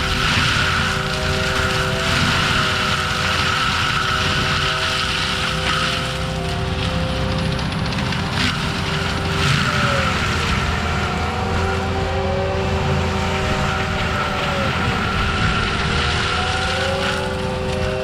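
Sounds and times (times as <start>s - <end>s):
mulcher engine drone with whine: 0.0s - 18.0s.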